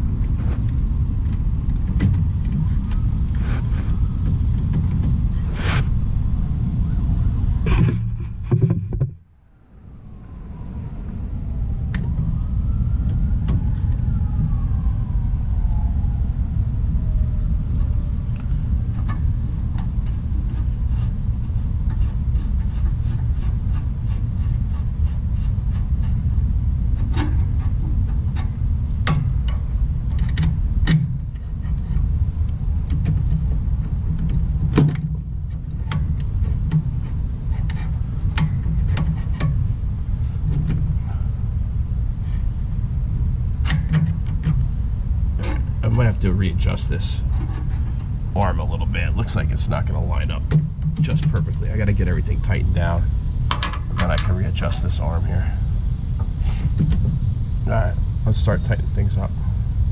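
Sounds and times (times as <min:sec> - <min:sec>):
steady low rumble: 0:00.0 - 0:59.9
distant siren: 0:02.3 - 0:07.7, 0:09.2 - 0:21.8.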